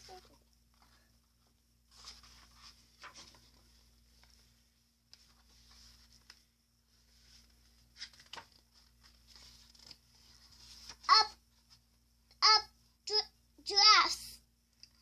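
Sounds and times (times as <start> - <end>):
book pages rustling: 0.0 - 11.9.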